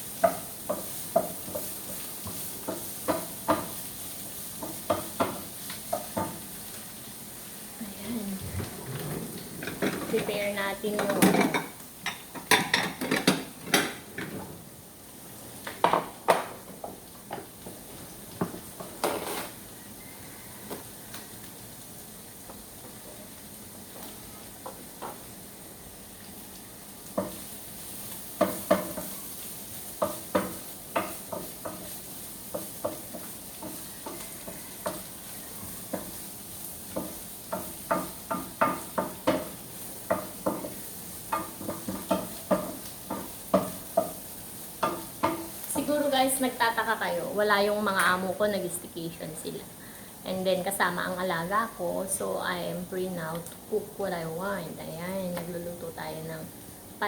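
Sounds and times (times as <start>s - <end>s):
frying sizzle: 0.0s - 57.0s
utensil knocking and scraping a pan: 0.2s - 3.8s, 18.4s - 19.6s, 30.0s - 36.2s, 36.9s - 44.2s.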